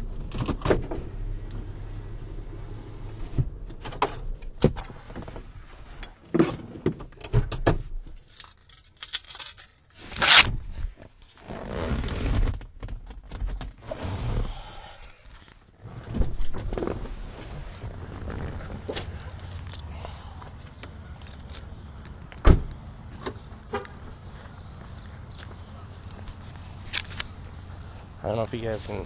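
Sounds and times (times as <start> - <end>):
car engine idling: 0.0 - 6.0
keys jangling: 8.1 - 9.9, 19.3 - 19.9.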